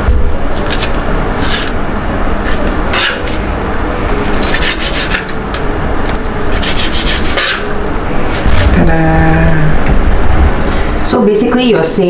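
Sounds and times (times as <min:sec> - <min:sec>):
knife scraping chicken: 0:00.4 - 0:01.8, 0:02.4 - 0:03.5, 0:04.1 - 0:05.4, 0:06.4 - 0:07.7
steady low rumble: 0:07.7 - 0:11.2.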